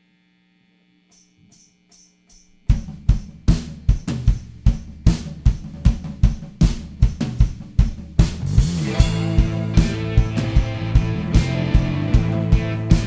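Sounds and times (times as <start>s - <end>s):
rock drum kit beat: 2.6s - 13.0s.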